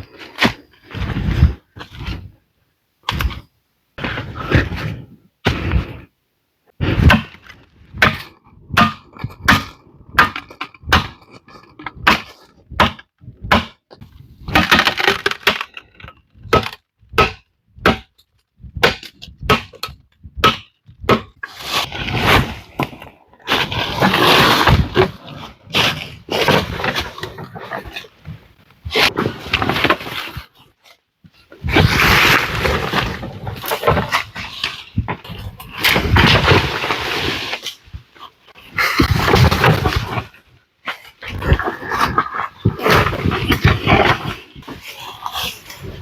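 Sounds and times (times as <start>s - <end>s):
wood cracking and chopping: 6.8s - 30.4s, 31.4s - 40.4s
wood crunching and splintering: 14.4s - 18.1s, 18.8s - 30.4s, 31.4s - 40.4s, 41.0s - 46.0s.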